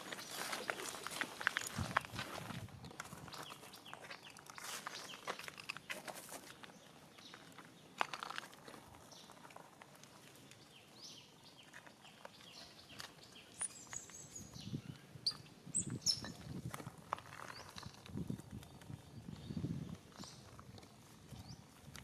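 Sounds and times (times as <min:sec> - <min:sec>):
rustles and clicks: 0:00.0 - 0:10.7
animal chirps and squeaks: 0:13.5 - 0:16.5.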